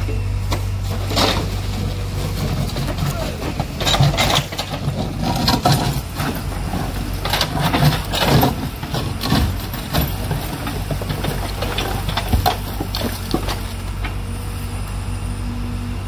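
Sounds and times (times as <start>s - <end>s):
diesel engine running: 0.0s - 16.0s
metallic clanks and rattles: 0.5s - 14.2s.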